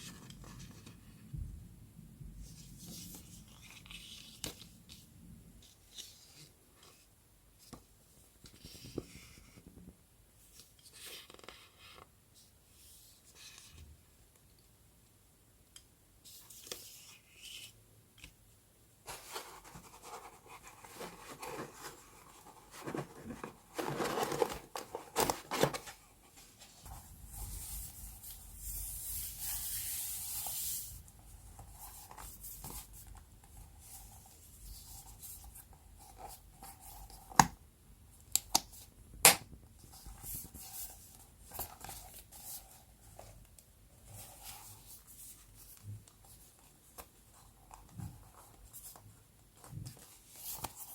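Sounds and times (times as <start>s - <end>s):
paper rustling: 19.1s - 33.2s.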